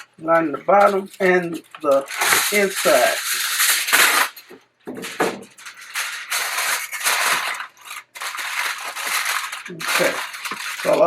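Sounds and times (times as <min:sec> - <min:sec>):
aluminum foil crinkling: 0:00.0 - 0:11.0.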